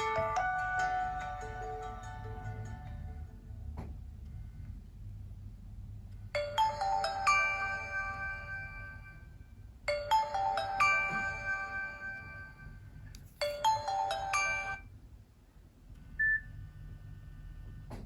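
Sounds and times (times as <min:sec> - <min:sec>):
phone alert chiming notes: 0:09.9 - 0:12.7, 0:13.4 - 0:14.8.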